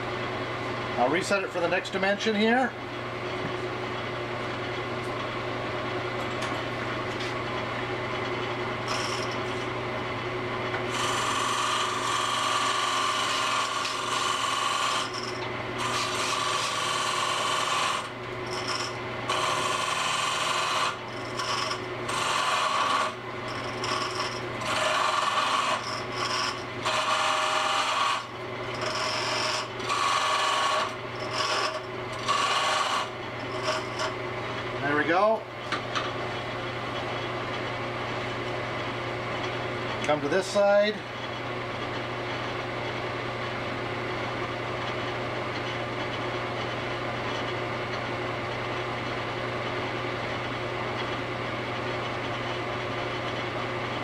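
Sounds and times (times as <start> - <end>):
turning tool cutting wood: 8.8 - 9.6, 10.8 - 34.2
wood lathe motor hum: 8.8 - 9.7, 10.7 - 34.2.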